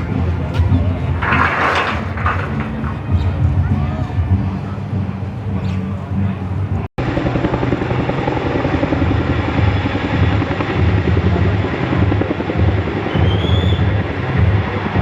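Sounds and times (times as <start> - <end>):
turbine engines: 0.0 - 15.0
helicopter rotor blades thudding: 7.0 - 15.0.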